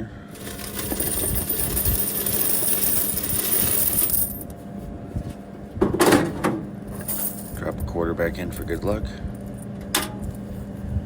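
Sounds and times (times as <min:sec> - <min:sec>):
coins clattering out of machine: 0:00.3 - 0:04.4, 0:07.0 - 0:07.6.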